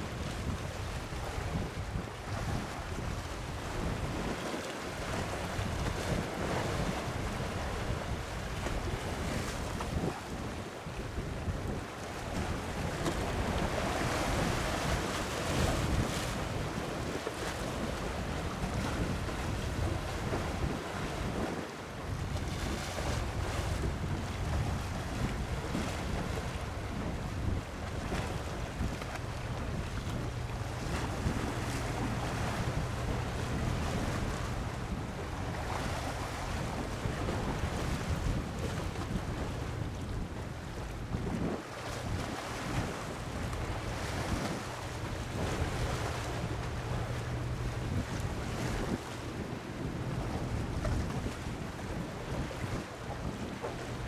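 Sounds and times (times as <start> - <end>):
wind buffeting microphone: 0.2 - 4.4, 18.2 - 53.9
sea waves washing: 28.3 - 37.8, 41.5 - 51.3.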